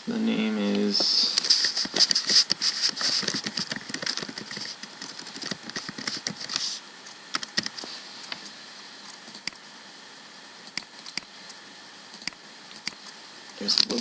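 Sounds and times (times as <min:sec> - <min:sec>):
rapid keyboard typing: 0:01.9 - 0:06.7, 0:07.3 - 0:07.8.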